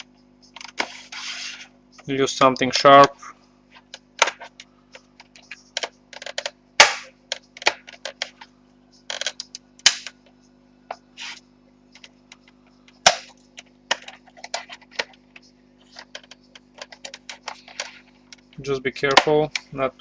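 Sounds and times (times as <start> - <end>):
tool scraping plastic: 0.6 - 1.7.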